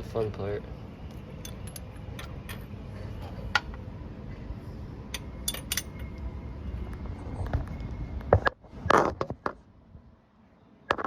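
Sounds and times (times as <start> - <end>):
steady low rumble: 0.0 - 10.3
tools clinking on metal: 1.4 - 2.6, 5.1 - 6.2.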